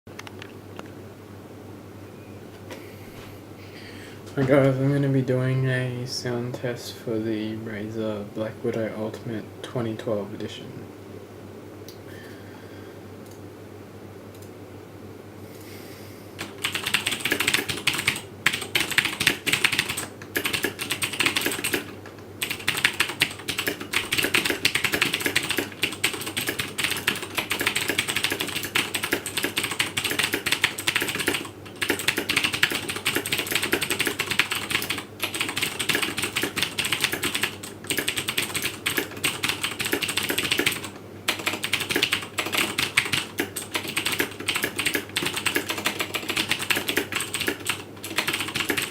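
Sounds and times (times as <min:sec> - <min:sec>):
clicky mechanical keyboard typing: 0:16.4 - 0:48.9.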